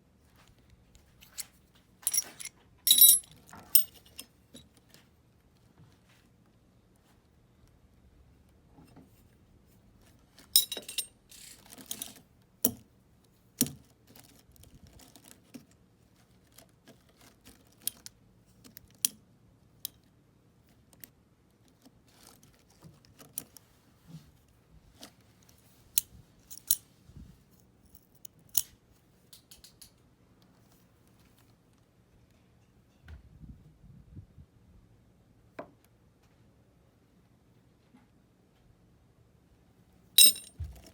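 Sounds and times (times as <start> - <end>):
metal hand tools clinking: 2.0 - 4.2, 10.6 - 11.1, 40.2 - 40.5.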